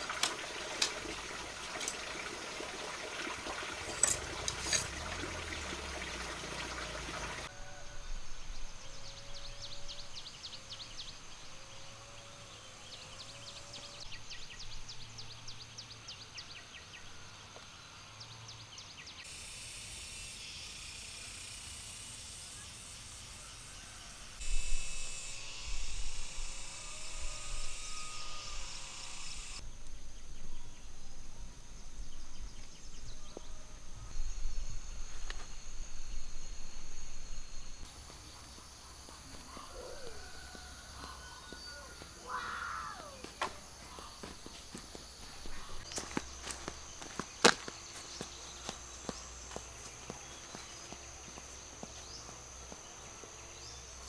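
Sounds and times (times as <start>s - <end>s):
insect chirring: 0.0s - 7.5s, 19.3s - 54.0s
splashing water-like noise: 0.0s - 7.5s
low-pitched calls: 37.8s - 53.2s.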